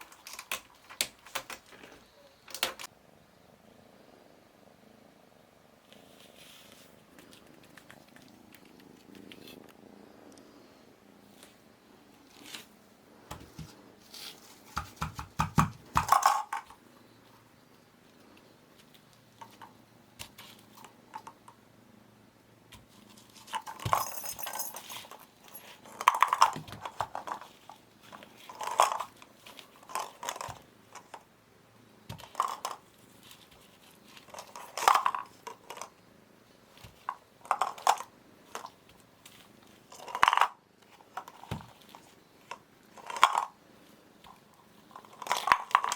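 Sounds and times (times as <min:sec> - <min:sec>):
kitten chewing and crunching: 0:07.0 - 0:10.4.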